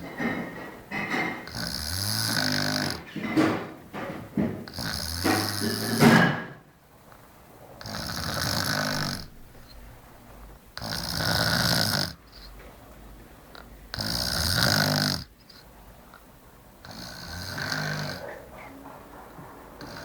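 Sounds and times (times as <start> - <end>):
person snoring: 1.5 - 3.0, 4.7 - 6.2, 7.8 - 9.3, 10.8 - 12.2, 13.9 - 15.3, 16.8 - 18.6, 19.8 - 20.0.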